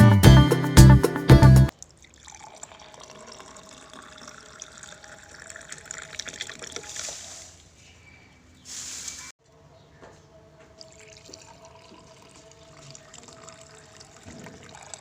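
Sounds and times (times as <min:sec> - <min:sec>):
liquid trickling and dripping: 0:01.7 - 0:07.7, 0:10.7 - 0:15.0.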